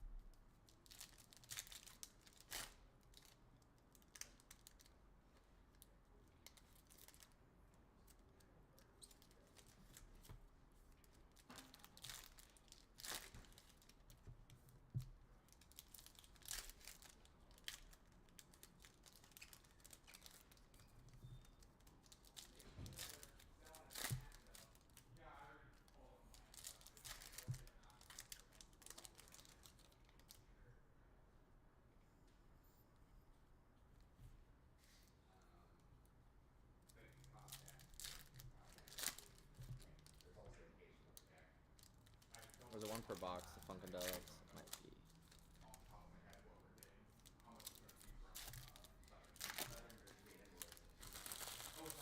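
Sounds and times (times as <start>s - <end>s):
wrapping tearing and crinkling: 0.6s - 5.0s, 5.7s - 7.4s, 10.9s - 25.1s, 26.0s - 30.4s, 36.9s - 40.4s, 41.2s - 52.0s.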